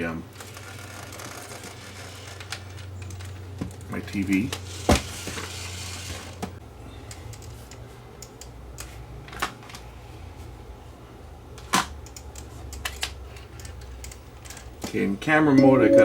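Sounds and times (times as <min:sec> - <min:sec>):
low steady hum: 0:15.5 - 0:16.0.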